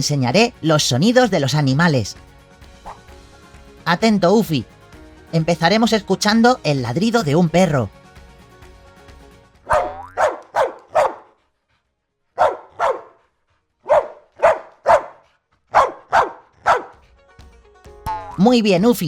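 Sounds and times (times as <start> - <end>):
dog barking: 2.8 - 3.1, 9.7 - 11.4, 12.4 - 13.2, 13.8 - 17.0.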